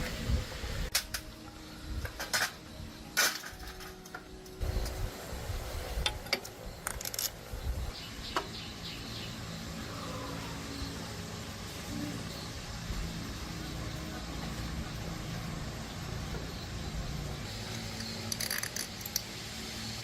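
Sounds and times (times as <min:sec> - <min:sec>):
metal tools clinking: 0:02.2 - 0:04.6, 0:17.5 - 0:19.3.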